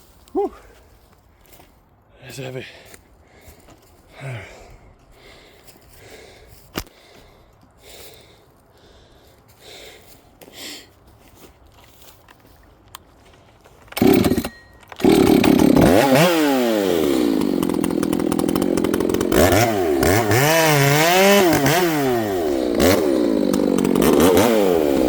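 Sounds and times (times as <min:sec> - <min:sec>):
chainsaw engine revving: 0:13.9 - 0:25.0.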